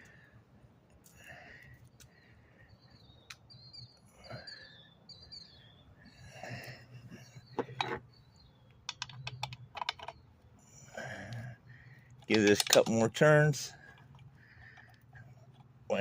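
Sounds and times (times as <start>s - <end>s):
metal parts clicking and rattling: 8.8s - 10.2s, 12.2s - 15.7s.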